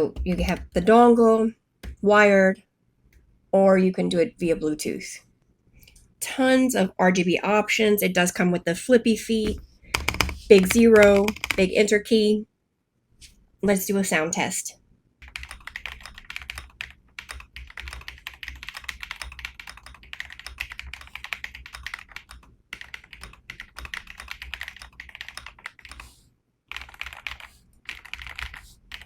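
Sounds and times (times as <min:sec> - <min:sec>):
mechanical keyboard typing: 0:00.1 - 0:00.8, 0:09.4 - 0:11.8, 0:15.2 - 0:26.1, 0:26.7 - 0:29.0.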